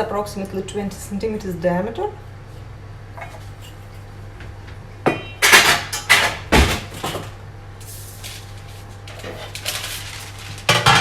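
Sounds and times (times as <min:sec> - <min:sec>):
baking pan clattering and scraping: 0:09.1 - 0:11.0.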